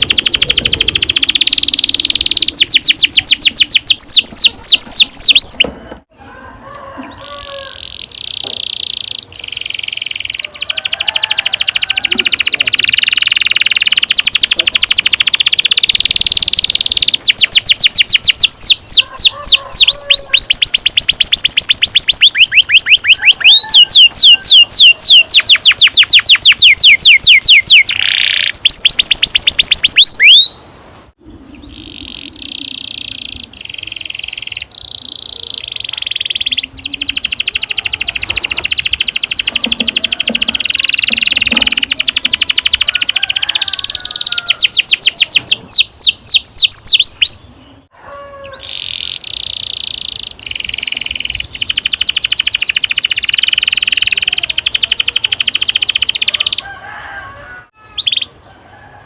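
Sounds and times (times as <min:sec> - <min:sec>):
canary singing trills: 0:00.0 - 0:05.7, 0:07.0 - 0:30.6, 0:31.2 - 0:58.6.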